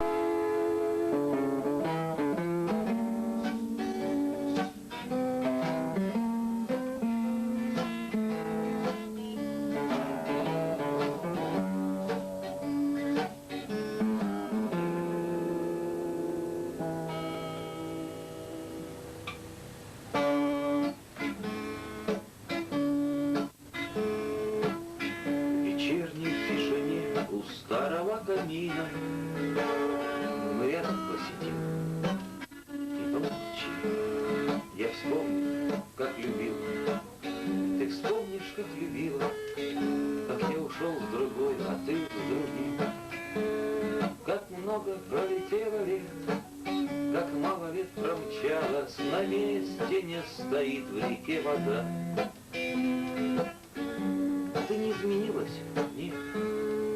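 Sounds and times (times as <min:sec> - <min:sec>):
guitar accompaniment: 0:00.0 - 0:56.9
slow melody: 0:00.0 - 0:56.9.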